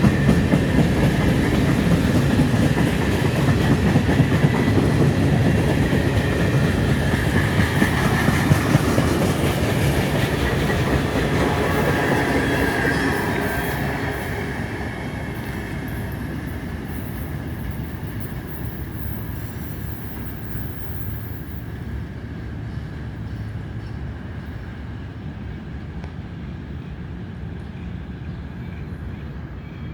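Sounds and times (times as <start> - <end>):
train cars clattering on rails: 0.0 - 21.7.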